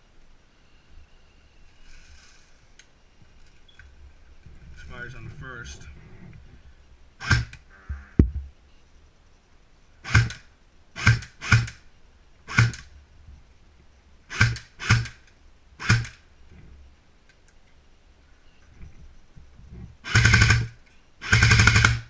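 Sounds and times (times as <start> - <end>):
airsoft rifle shots: 7.2 - 7.6, 10.0 - 11.8, 12.5 - 12.9, 14.3 - 15.2, 15.8 - 16.2, 20.0 - 22.0.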